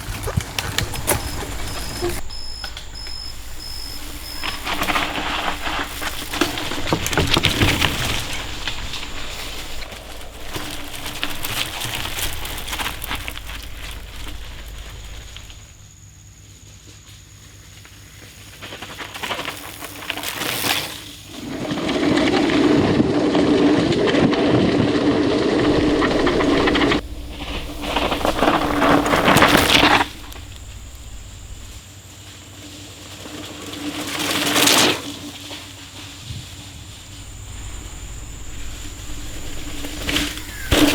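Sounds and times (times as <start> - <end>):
bike rattling and clicking: 0.0 - 15.9, 25.6 - 31.8, 36.8 - 40.9
rumbling: 0.0 - 15.9, 25.6 - 31.8, 36.3 - 40.9
bike tyres on dirt: 0.0 - 40.9.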